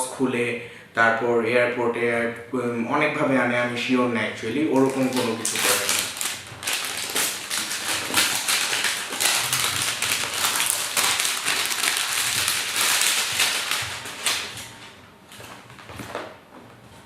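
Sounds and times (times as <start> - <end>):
crinkling plastic and cardboard packaging: 4.7 - 16.4.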